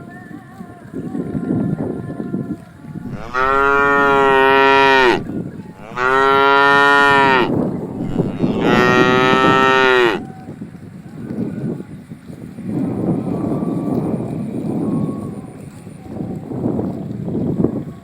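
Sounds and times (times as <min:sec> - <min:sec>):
calf mooing: 0:03.1 - 0:10.3.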